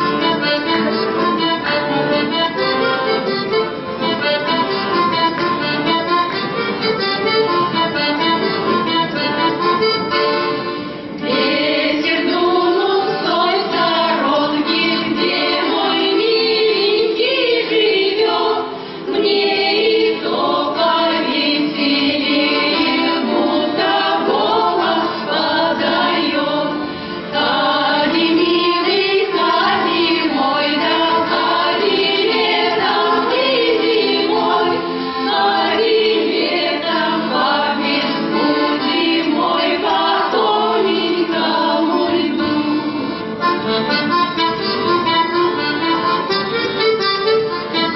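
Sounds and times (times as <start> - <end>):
accordion: 0.0 - 47.9
choir singing: 11.1 - 43.2.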